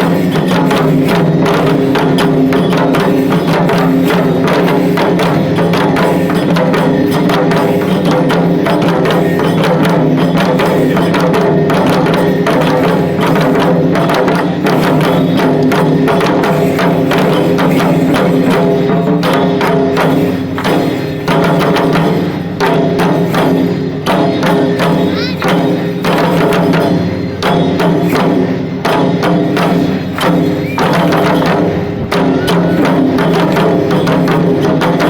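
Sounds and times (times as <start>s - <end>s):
drums in fast rhythm: 0.0s - 35.0s.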